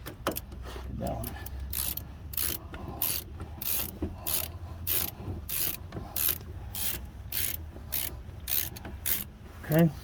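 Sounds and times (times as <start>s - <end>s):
ratchet wrench clicking: 1.6s - 9.3s.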